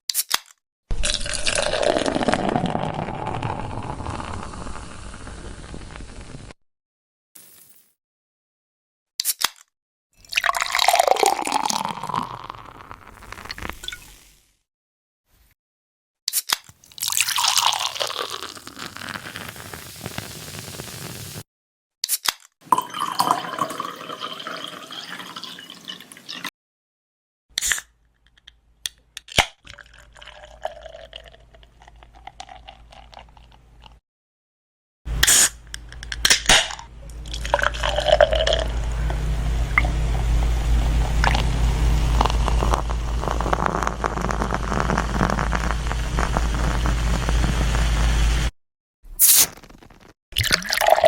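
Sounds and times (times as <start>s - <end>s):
liquid pouring: 0.9s - 5.0s, 10.2s - 14.3s, 16.8s - 21.4s, 22.7s - 26.5s, 29.7s - 33.6s, 37.0s - 47.7s, 50.4s - 51.0s
short hiss: 49.1s - 49.7s.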